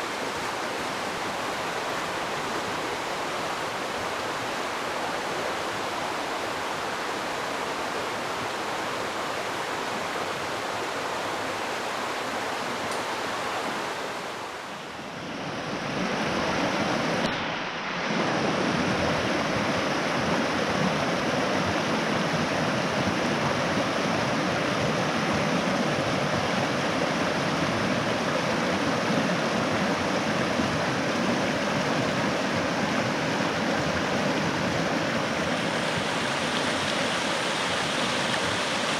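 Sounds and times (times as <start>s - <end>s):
creek water flowing: 0.0s - 38.9s.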